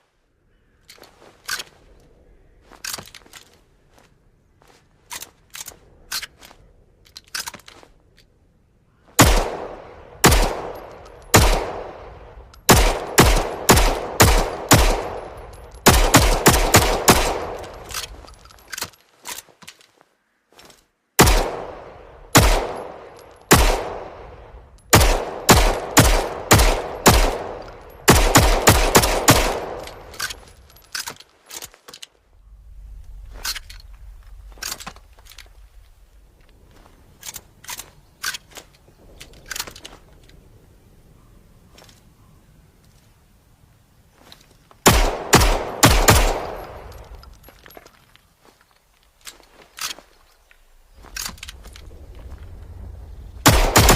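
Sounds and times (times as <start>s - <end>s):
pistol shots echoing: 9.2s - 17.9s, 21.2s - 30.2s, 44.9s - 47.0s, 53.4s - 53.9s.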